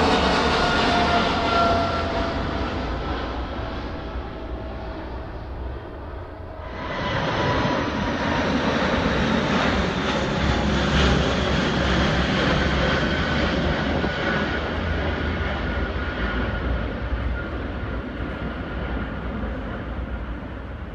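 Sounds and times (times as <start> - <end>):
jet engines roaring on takeoff: 0.0 - 20.9.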